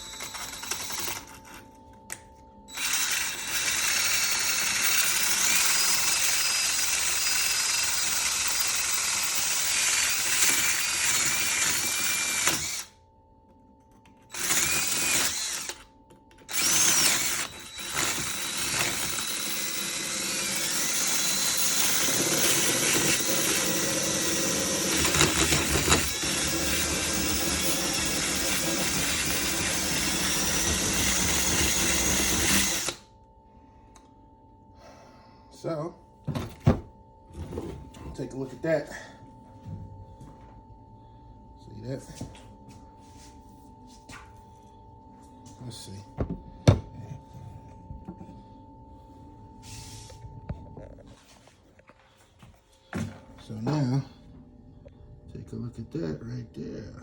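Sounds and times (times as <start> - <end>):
electric drill grinding steel blade: 0.0 - 1.7, 2.7 - 13.0, 14.2 - 33.1.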